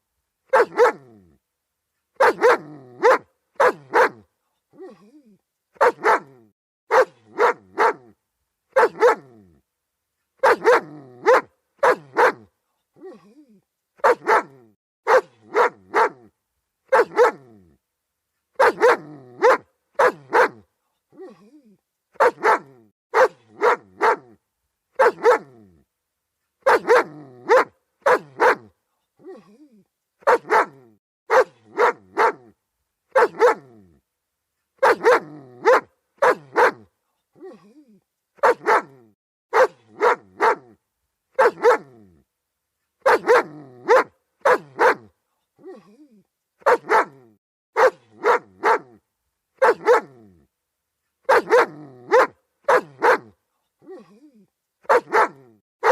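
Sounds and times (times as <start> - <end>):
dog barking: 0.5 - 1.2, 2.2 - 5.0, 5.8 - 9.4, 10.4 - 13.2, 14.0 - 16.3, 16.9 - 17.6, 18.6 - 20.6, 22.2 - 24.4, 25.0 - 25.6, 26.6 - 29.4, 30.2 - 33.8, 34.8 - 37.6, 38.4 - 40.8, 41.4 - 42.0, 43.0 - 45.8, 46.6 - 49.0, 49.6 - 50.3, 51.2 - 54.1, 54.8 - 55.9.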